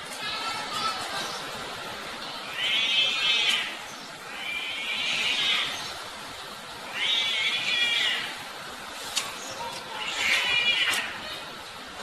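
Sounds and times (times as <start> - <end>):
cats yowling: 6.9 - 8.4, 9.7 - 11.5.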